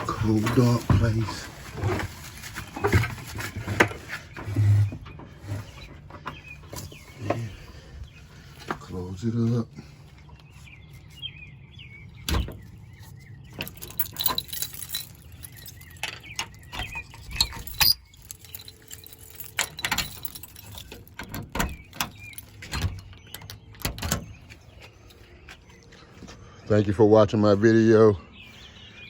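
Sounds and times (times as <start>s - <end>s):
enclosure clicks and knocks: 19.4s - 24.4s.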